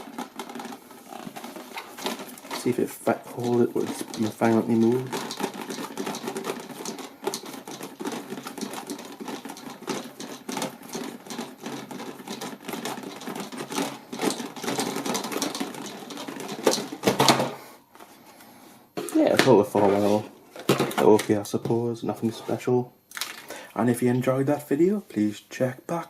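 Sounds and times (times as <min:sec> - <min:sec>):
plastic clamps clicking and rattling: 0:03.4 - 0:17.5.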